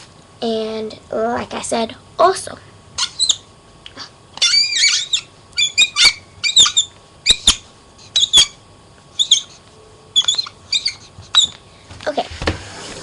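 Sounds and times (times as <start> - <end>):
small animal chirping and squeaking: 3.0 - 3.5, 4.4 - 9.6, 10.2 - 11.6.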